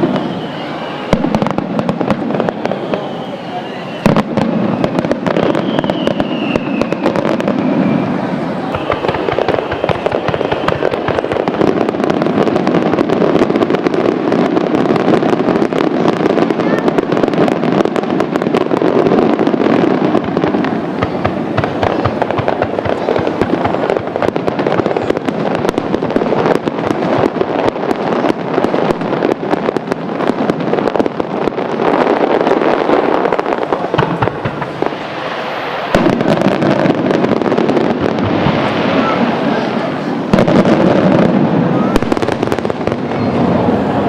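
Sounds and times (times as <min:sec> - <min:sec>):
fireworks bangs and crackling: 0:00.0 - 0:44.0.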